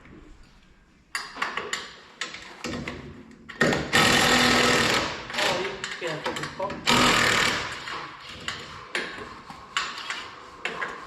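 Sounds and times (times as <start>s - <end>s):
power tool rattling: 3.6s - 6.2s, 6.8s - 8.0s.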